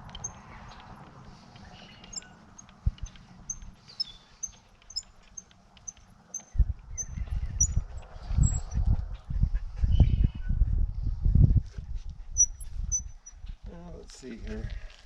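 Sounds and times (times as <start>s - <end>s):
birds chirping: 0.0s - 9.3s, 12.3s - 13.5s.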